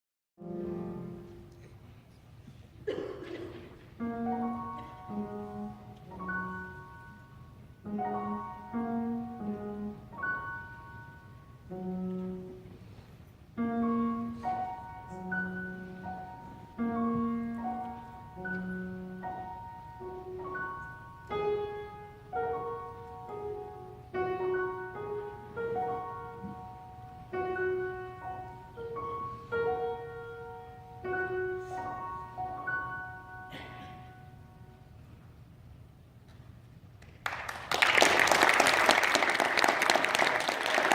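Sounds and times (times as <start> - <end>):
child playing piano melody: 4.0 - 34.9.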